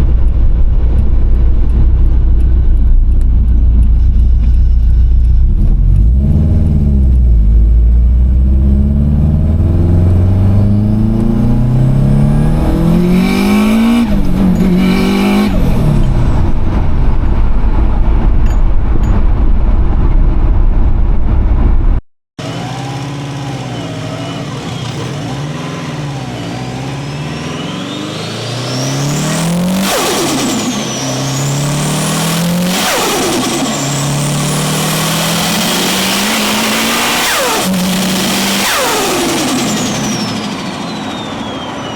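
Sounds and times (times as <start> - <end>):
car engine accelerating hard: 0.0 - 21.7, 22.4 - 41.9
turbo fluttering: 23.5 - 41.9.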